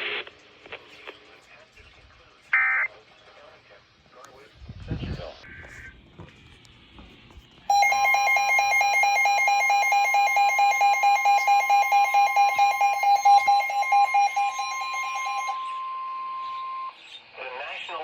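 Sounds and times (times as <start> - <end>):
steady electronic tone: 7.7 - 15.6
pulsing electronic alarm beep: 7.7 - 17.0.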